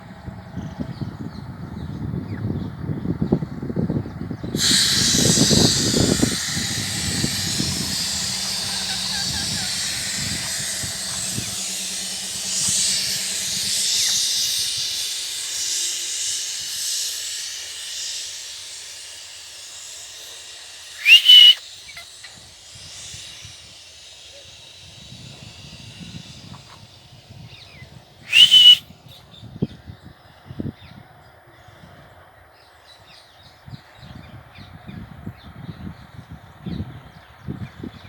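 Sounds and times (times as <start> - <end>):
steady hiss: 4.6 - 21.7
parakeet screeching: 21.0 - 21.6, 28.3 - 28.8.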